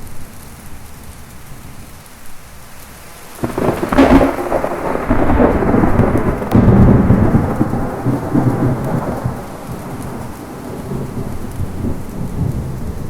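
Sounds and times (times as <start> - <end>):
heavy rain: 0.0 - 13.0
thunder rumbling: 3.2 - 13.0.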